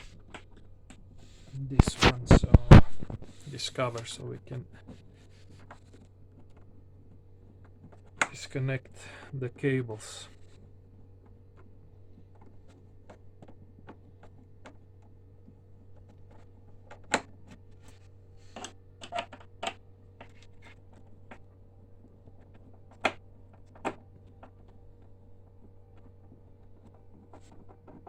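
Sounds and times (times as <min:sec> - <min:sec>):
plastic parts clicking and knocking: 0:11.2 - 0:28.0.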